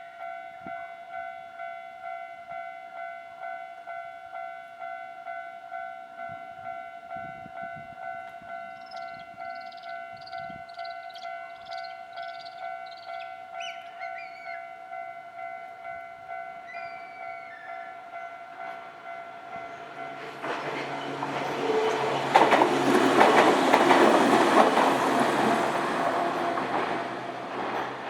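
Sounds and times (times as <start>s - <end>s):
train rumble and wheel knocks: 18.5s - 28.0s.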